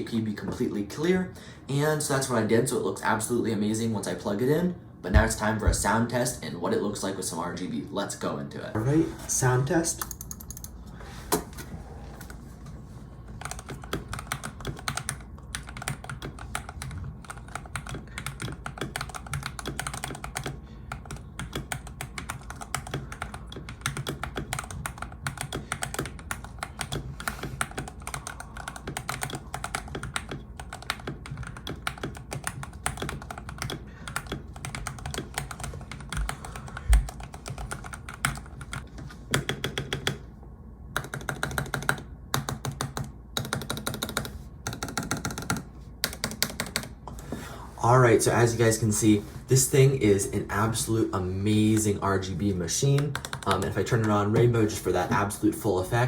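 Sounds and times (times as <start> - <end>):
mechanical keyboard typing: 9.9 - 10.8, 13.4 - 40.2, 40.9 - 47.0, 52.8 - 54.5.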